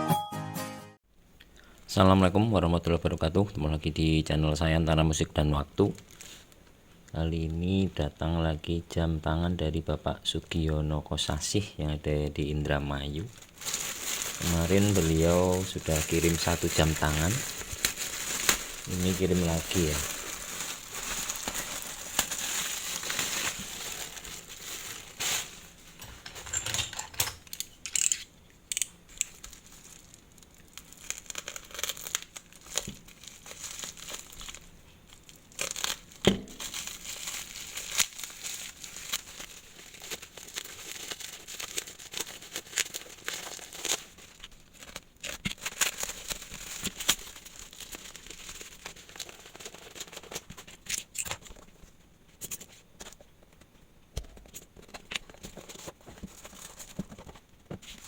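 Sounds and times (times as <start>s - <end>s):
plastic packaging crinkling and tearing: 5.8s - 6.5s, 13.0s - 51.8s, 54.4s - 58.0s.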